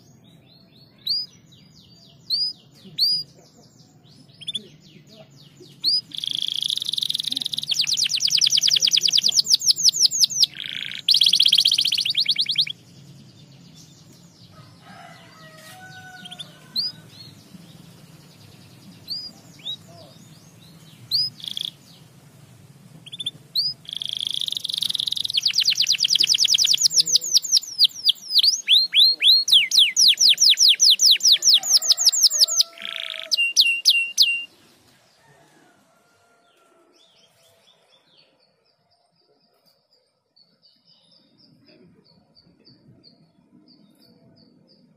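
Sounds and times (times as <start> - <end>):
canary singing trills: 0.0 - 22.2, 23.0 - 34.7.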